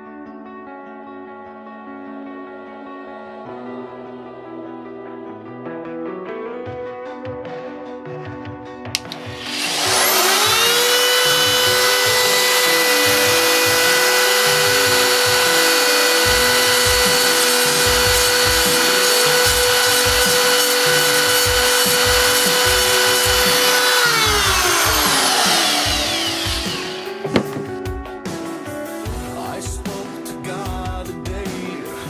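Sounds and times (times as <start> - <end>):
high-speed rotary tool whine: 9.0 - 27.8.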